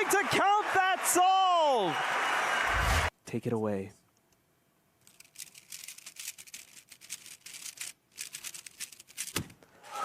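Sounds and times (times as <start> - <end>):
plastic puzzle cube clicking: 5.0 - 9.6.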